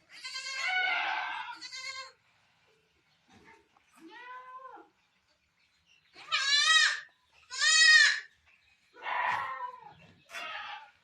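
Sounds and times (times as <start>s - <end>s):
goats bleating: 0.1s - 2.2s, 6.2s - 8.3s, 9.0s - 11.0s.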